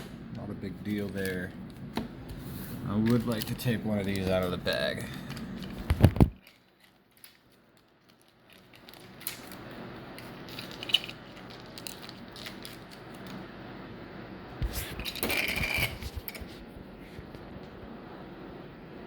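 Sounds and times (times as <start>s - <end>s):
plastic rustling: 2.9s - 13.4s
plastic packaging clicks: 3.0s - 13.4s.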